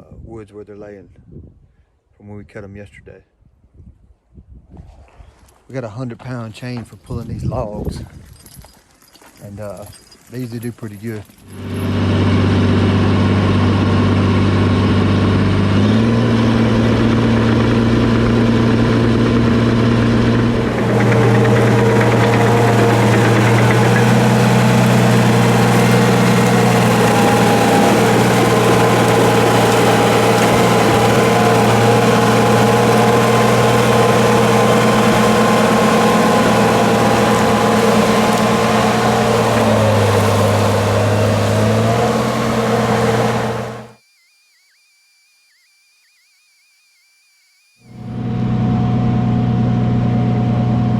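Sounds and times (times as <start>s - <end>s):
bulldozer diesel engine running: 11.5s - 44.0s.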